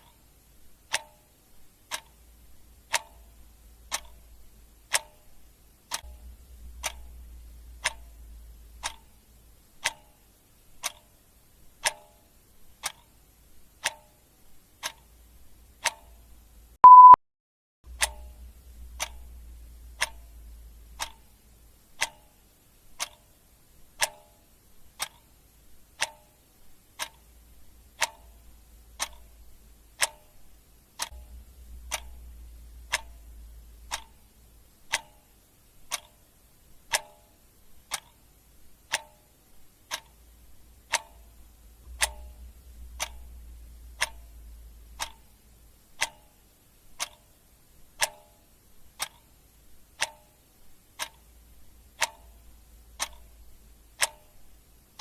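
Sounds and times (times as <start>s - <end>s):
clock ticking: 0.0s - 17.2s, 17.9s - 55.0s
short high-pitched beep: 16.8s - 17.2s.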